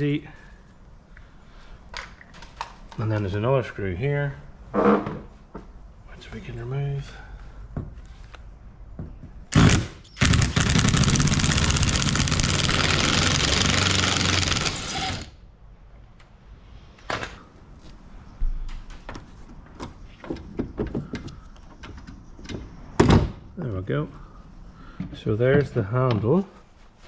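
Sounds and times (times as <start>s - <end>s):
cordless screwdriver motor: 9.6s - 15.3s.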